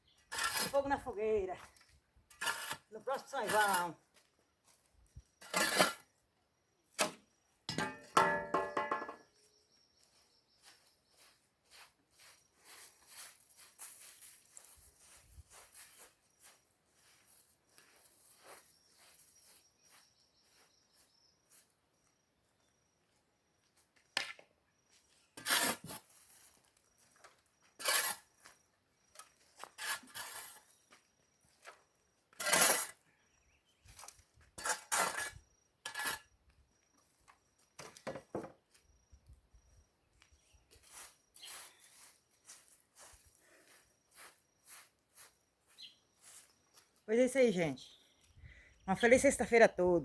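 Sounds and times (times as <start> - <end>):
shovel scraping ashes: 0.3 - 0.9, 2.3 - 4.0, 5.4 - 6.1, 25.4 - 26.5, 27.8 - 28.4, 29.6 - 30.8, 32.3 - 33.0, 34.6 - 36.3.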